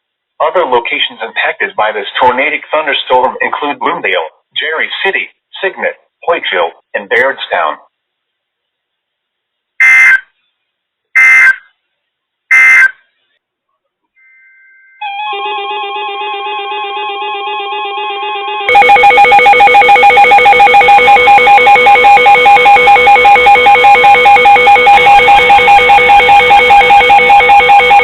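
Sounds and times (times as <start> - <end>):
loud pulsing electronic alarm: 12.5 - 13.0, 15.0 - 28.0
warbling beeping tone: 18.4 - 28.0.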